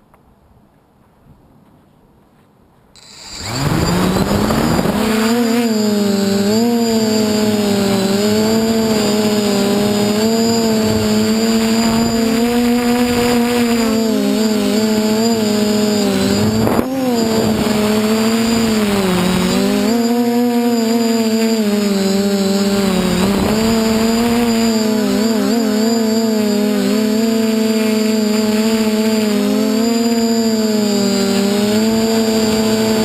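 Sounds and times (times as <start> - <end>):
drone propellers buzzing whine: 3.0 - 33.0.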